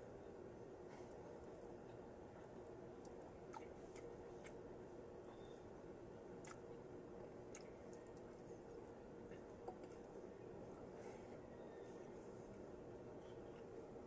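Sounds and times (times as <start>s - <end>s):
low background hum: 0.0s - 14.0s
chewing vegetables: 0.9s - 11.4s.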